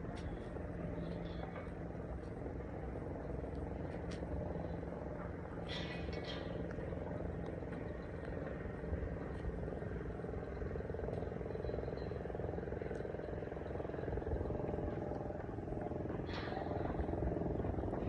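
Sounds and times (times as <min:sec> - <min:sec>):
continuous hum: 0:00.0 - 0:18.0
low engine rumble: 0:00.0 - 0:18.0.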